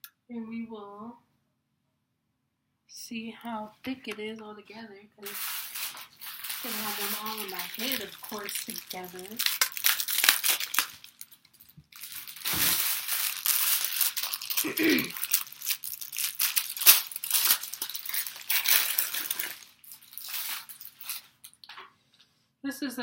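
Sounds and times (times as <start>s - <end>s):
hair bundles rustling and crinkling: 5.2s - 22.2s.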